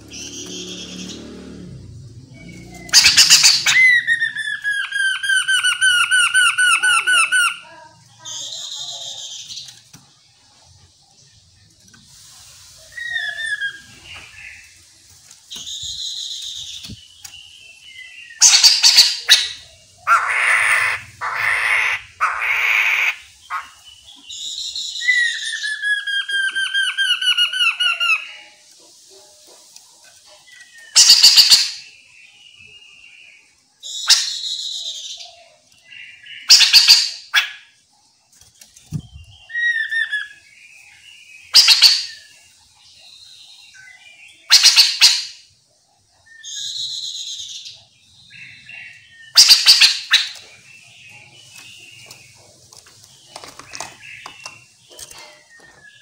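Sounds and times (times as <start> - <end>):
bird harsh chattering: 2.2 - 9.6, 18.4 - 23.8, 30.9 - 31.9, 36.2 - 37.7, 41.5 - 42.3, 44.5 - 45.4, 48.3 - 50.6
bird whistled song phrases: 2.3 - 7.6, 12.8 - 14.6, 22.7 - 28.4, 33.8 - 35.3, 39.0 - 42.3, 46.2 - 50.4.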